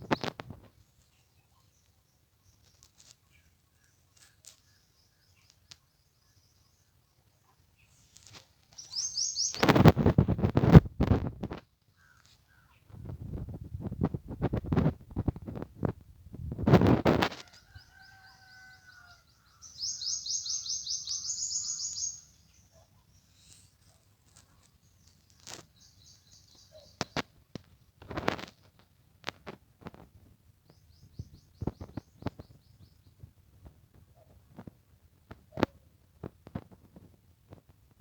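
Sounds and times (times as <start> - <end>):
bird singing fast trill: 8.8 - 9.7, 19.3 - 22.8, 25.8 - 27.1.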